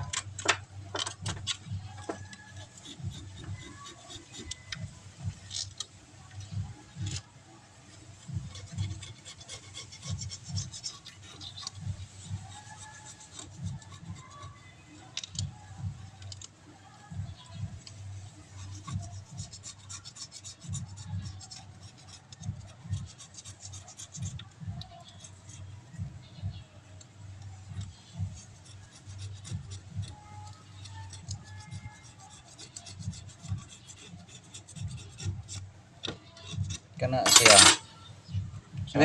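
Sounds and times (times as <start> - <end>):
hands scraping engine parts: 27.8 - 38.0.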